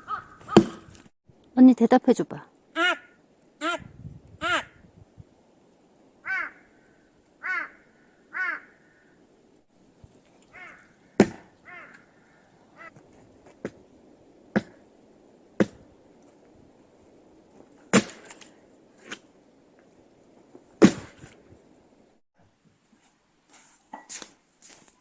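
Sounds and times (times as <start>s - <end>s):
crow cawing: 0.0s - 1.0s, 2.8s - 3.8s, 4.4s - 4.8s, 6.2s - 9.2s, 10.5s - 13.0s
knocks of wood: 0.4s - 1.0s, 11.2s - 11.5s
axe chopping firewood: 0.5s - 0.9s, 11.2s - 11.6s, 14.5s - 14.8s, 15.6s - 15.9s, 17.9s - 19.2s, 20.8s - 21.3s.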